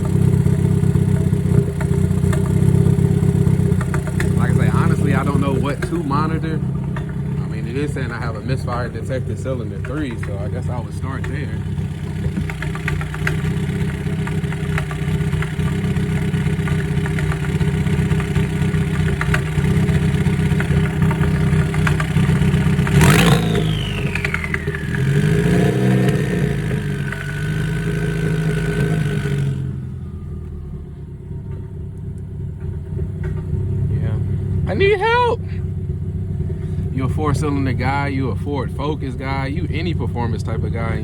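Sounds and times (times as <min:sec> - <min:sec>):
misfiring car engine idling: 0:00.0 - 0:41.0
falling whistle: 0:23.5 - 0:24.9.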